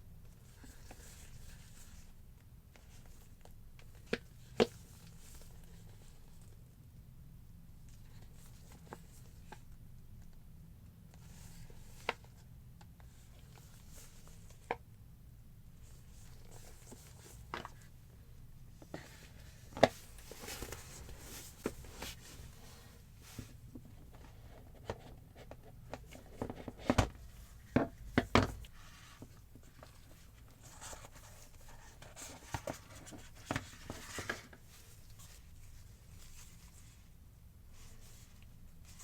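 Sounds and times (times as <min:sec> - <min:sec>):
cardboard and plastic rustling: 0:18.8 - 0:37.0.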